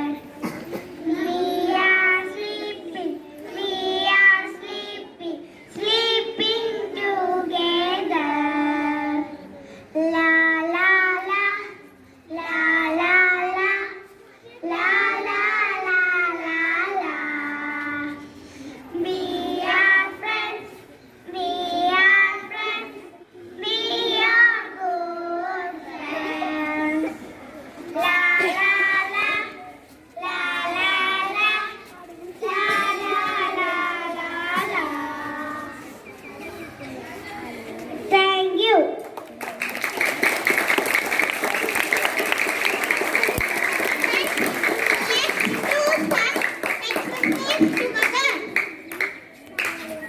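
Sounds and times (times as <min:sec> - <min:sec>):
children singing unaccompanied: 0:00.0 - 0:18.3, 0:19.0 - 0:37.0.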